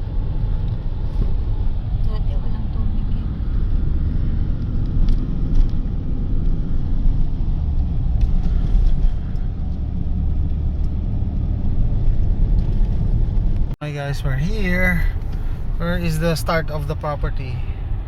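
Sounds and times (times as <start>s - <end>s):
car road and engine rumble: 0.0s - 18.0s.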